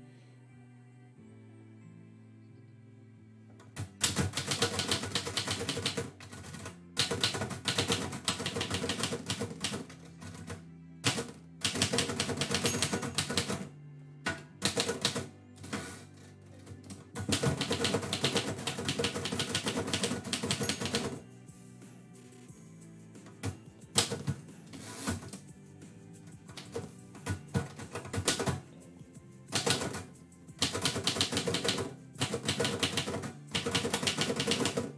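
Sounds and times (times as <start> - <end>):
typewriter keys clicking: 3.7 - 13.7, 14.3 - 16.0, 16.6 - 21.2, 23.3 - 25.4, 26.5 - 28.7, 29.5 - 34.9.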